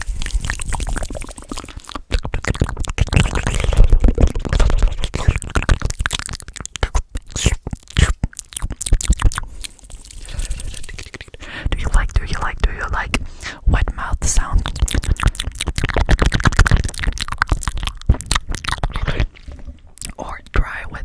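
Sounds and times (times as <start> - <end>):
wet mouth clicks and pops: 0.0 - 21.0
breathy puffs: 9.4 - 12.1, 13.1 - 14.4.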